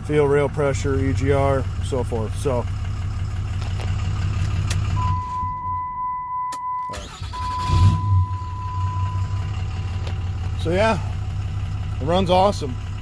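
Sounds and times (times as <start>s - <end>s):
diesel engine idling: 0.0s - 13.0s
dashboard warning chime: 5.0s - 9.5s
engine cranking and starting: 6.8s - 10.2s.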